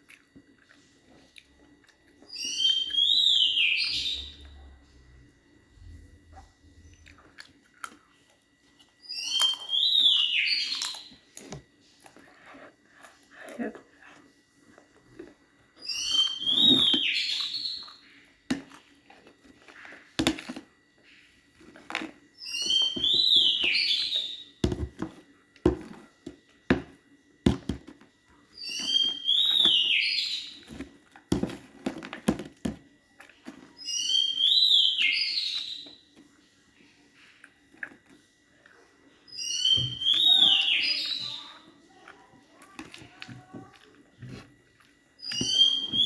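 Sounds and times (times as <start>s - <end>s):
bird whistled call: 2.3s - 4.6s, 9.1s - 11.1s, 15.8s - 18.0s, 22.4s - 24.5s, 28.6s - 30.6s, 33.8s - 36.0s, 39.3s - 41.5s, 45.2s - 46.0s.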